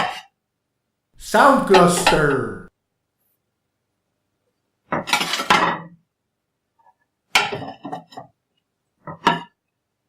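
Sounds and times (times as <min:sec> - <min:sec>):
dishes clattering: 0:05.0 - 0:05.9, 0:07.4 - 0:08.3, 0:09.1 - 0:09.6.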